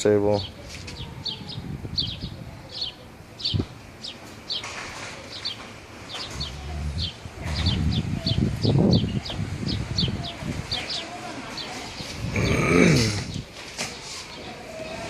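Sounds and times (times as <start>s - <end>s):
low rumble: 6.3s - 8.6s.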